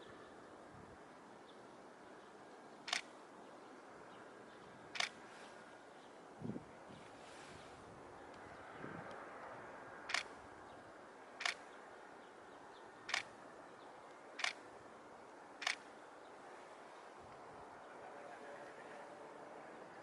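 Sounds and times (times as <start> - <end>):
faint outdoor hush: 0.0 - 20.0
camera shutter clicking: 2.9 - 3.1, 5.0 - 5.2, 10.1 - 10.3, 11.4 - 11.6, 13.1 - 13.3, 14.4 - 14.6, 15.6 - 15.8.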